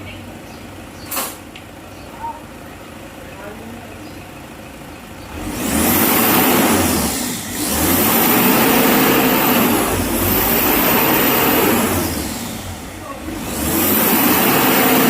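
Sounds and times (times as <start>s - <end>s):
vehicle engine revving: 5.1s - 15.0s.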